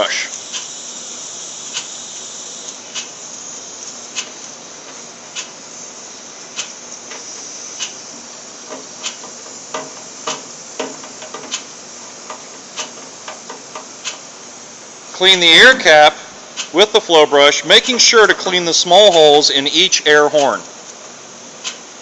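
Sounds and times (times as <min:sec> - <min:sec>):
steady hiss: 0:00.0 - 0:22.0
brush and metal parts knocking: 0:08.6 - 0:14.2
brush scrubbing metal parts: 0:08.6 - 0:14.3.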